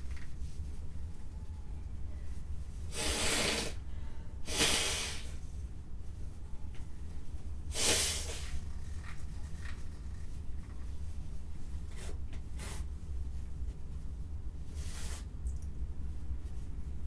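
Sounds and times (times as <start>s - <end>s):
steady low hum: 0.0s - 17.0s
faint short puffs of breath: 2.9s - 5.4s, 7.7s - 8.6s
sneeze: 4.5s - 5.4s, 7.7s - 8.5s.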